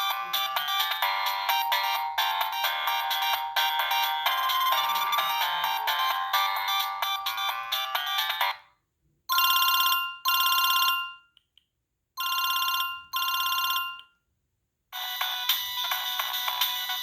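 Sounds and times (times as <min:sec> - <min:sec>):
phone ringtone melody: 0:00.0 - 0:08.6, 0:12.2 - 0:14.0, 0:15.0 - 0:17.0
telephone bell trilling rings: 0:00.0 - 0:08.6, 0:09.3 - 0:11.3, 0:12.2 - 0:14.0, 0:15.0 - 0:17.0.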